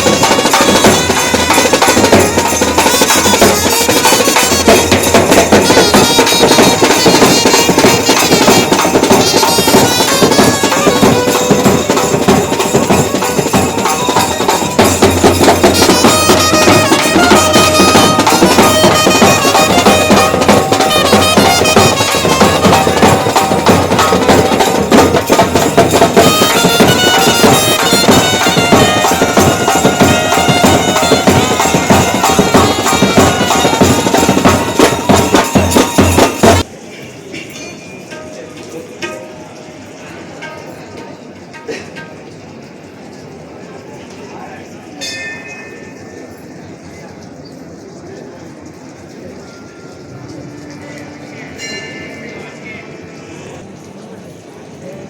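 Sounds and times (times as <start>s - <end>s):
shehnai reedy melody: 0.0s - 36.7s
drums beating: 0.0s - 36.8s, 37.6s - 42.8s.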